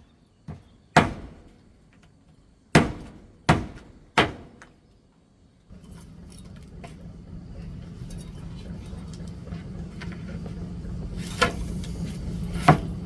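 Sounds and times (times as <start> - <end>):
heavy thunks: 0.5 - 1.9, 2.7 - 4.8.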